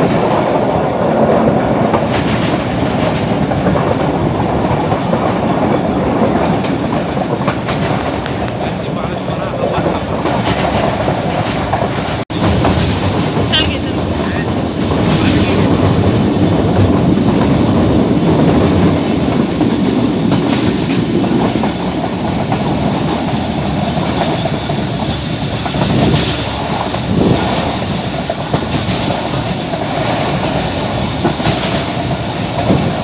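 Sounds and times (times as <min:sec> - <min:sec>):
train rumbling on rails: 0:00.0 - 0:33.0
wheel clicks over rail joints: 0:09.6 - 0:33.0.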